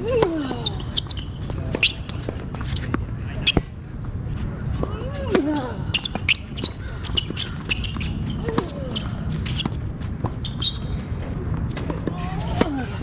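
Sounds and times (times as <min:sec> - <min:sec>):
shoe squeaks: 0:00.5 - 0:02.8, 0:05.9 - 0:11.1.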